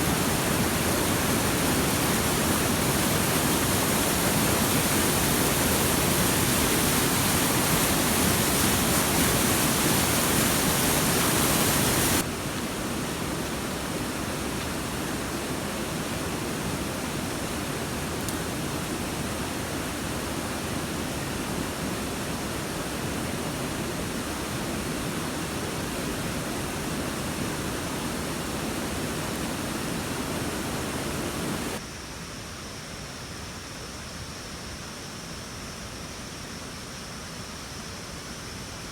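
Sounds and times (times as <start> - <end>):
steady rushing noise: 24.7 - 31.8.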